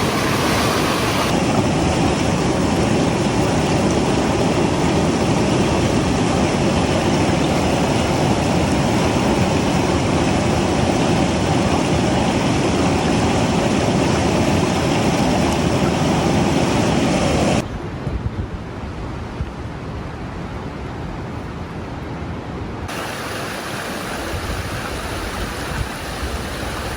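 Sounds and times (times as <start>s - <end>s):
whitewater rapids roaring: 0.0s - 4.4s, 22.9s - 26.9s.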